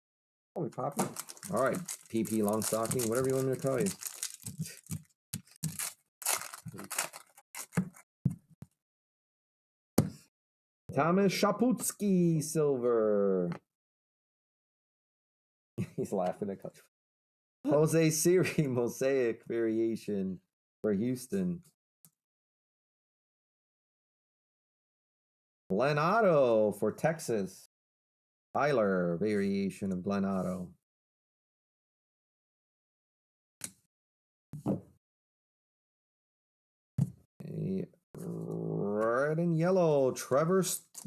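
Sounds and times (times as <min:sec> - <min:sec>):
trading cards flipping: 0:00.9 - 0:08.0.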